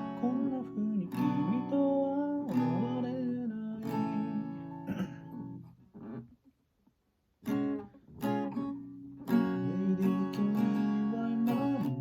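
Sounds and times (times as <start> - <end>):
acoustic guitar strumming: 0.0 - 6.3, 7.4 - 12.0
person singing: 9.3 - 12.0.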